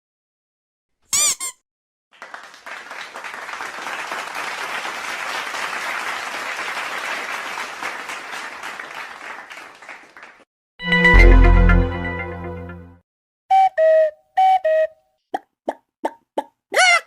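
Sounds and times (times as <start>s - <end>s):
crowd applause: 2.2s - 10.5s.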